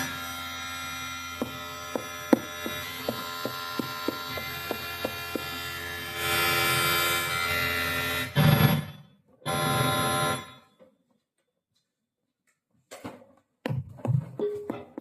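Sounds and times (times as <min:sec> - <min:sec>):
pads knocking and tapping: 0:01.4 - 0:05.7, 0:13.7 - 0:15.0.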